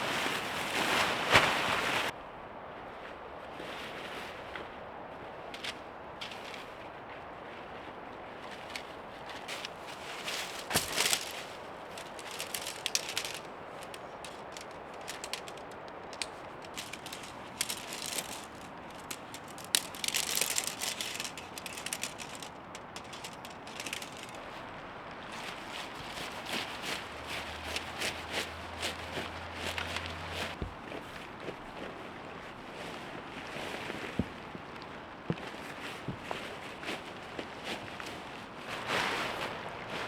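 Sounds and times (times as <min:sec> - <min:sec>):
tent fabric rustling and crackling: 0:00.0 - 0:02.2, 0:02.8 - 0:40.0
tent poles clicking and snapping: 0:05.5 - 0:06.8, 0:08.4 - 0:31.8.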